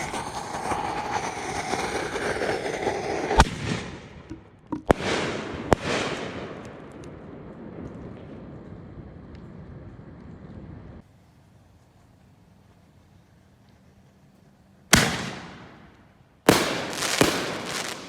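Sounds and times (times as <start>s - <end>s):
firework bangs: 0.0s - 9.2s, 14.9s - 15.9s, 16.5s - 18.0s
fireworks hissing and crackling: 0.0s - 10.3s, 16.5s - 18.0s.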